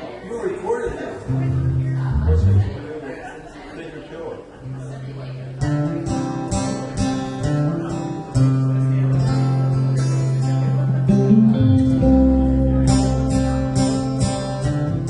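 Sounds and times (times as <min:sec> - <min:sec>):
acoustic guitar strumming chords: 0:01.3 - 0:02.9, 0:05.6 - 0:15.0
held low bass notes: 0:01.3 - 0:02.9, 0:11.1 - 0:14.0.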